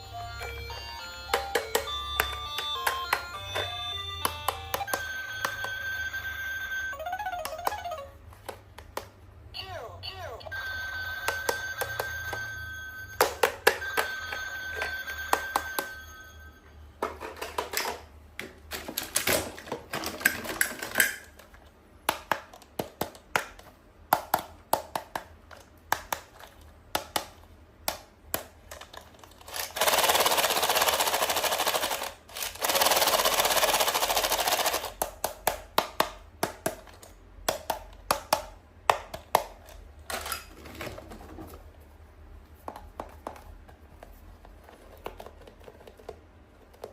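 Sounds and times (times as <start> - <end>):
electronic toy ringing tone: 0.0 - 8.2, 10.4 - 16.9
clicks and taps on plastic: 8.4 - 9.2, 22.0 - 28.7, 35.0 - 39.6.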